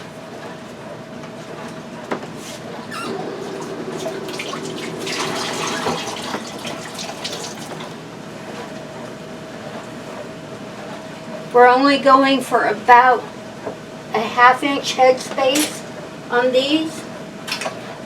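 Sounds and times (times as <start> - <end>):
salsa sloshing and pouring: 3.4 - 8.0.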